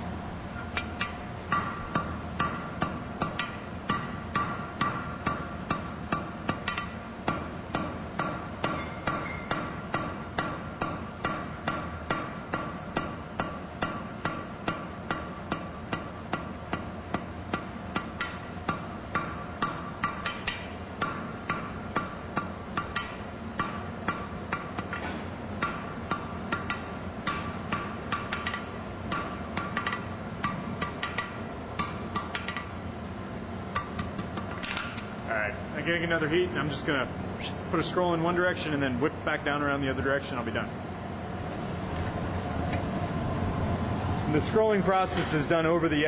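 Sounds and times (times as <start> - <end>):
hammer striking steel on anvil: 0.7 - 32.7.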